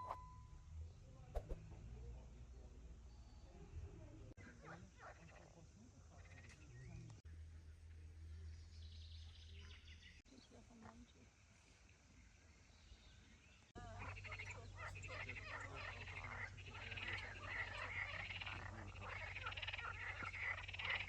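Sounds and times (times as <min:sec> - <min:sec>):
frogs croaking: 0:04.4 - 0:07.0, 0:13.8 - 0:21.0.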